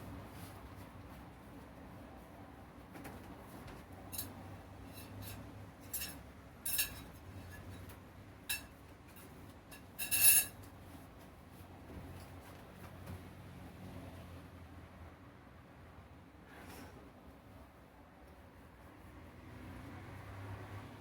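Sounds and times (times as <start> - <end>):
light clicks and clinks: 4.1 - 10.8.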